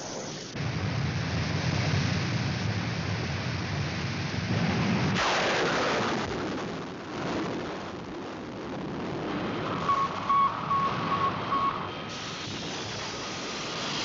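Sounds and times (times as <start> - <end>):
falling hissing sweep: 12.1 - 14.0.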